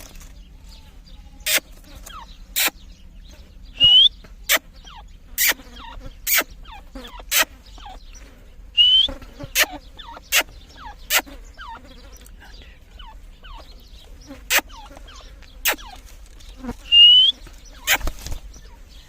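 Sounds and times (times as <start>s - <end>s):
soft chirps: 0.6s - 19.0s
francolin whistled calls: 3.7s - 8.0s, 8.8s - 11.8s, 16.8s - 18.1s.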